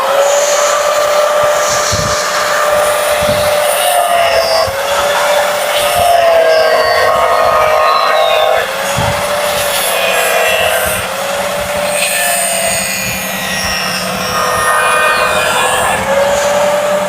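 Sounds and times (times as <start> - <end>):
electric grinder cutting: 0.0 - 17.0.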